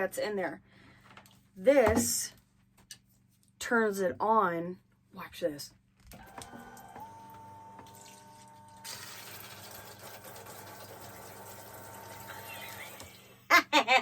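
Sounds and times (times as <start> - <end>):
shower pump whining: 6.1 - 13.4.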